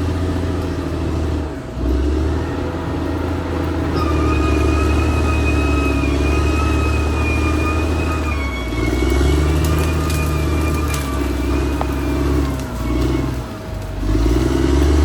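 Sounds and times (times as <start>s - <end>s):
bulldozer diesel engine running: 0.0s - 15.0s
high whine: 3.5s - 13.5s.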